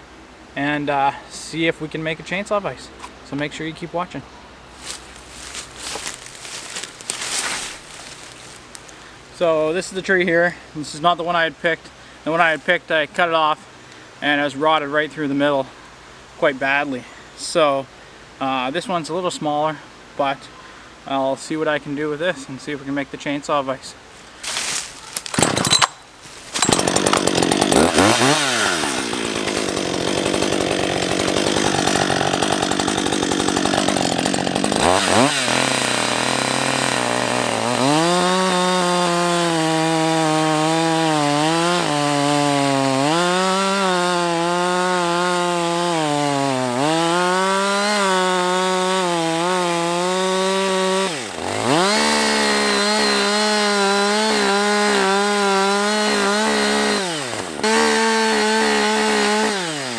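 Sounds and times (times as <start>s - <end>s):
chainsaw cutting wood: 4.8s - 9.0s, 24.4s - 59.9s.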